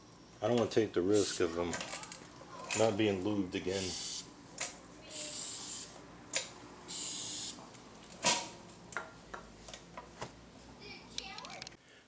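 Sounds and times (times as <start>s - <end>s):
aerosol spray hissing: 1.2s - 1.5s, 3.7s - 4.3s, 5.1s - 6.0s, 6.9s - 7.6s.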